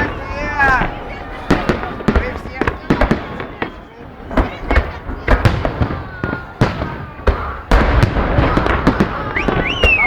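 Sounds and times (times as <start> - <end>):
firework bangs: 0.0 - 10.0
firework whistles: 8.5 - 10.0.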